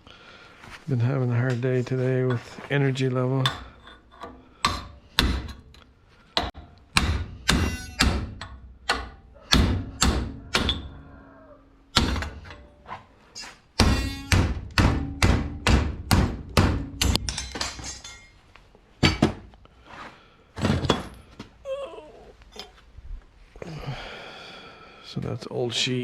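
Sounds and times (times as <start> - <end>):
hammer striking metal: 4.6 - 5.6, 6.4 - 10.9, 13.8 - 18.3.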